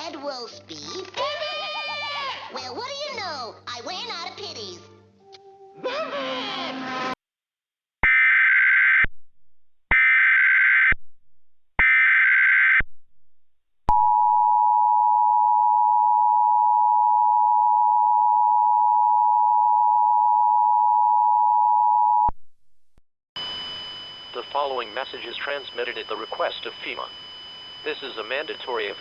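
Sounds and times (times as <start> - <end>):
digital data bursts: 23.5 - 29.0.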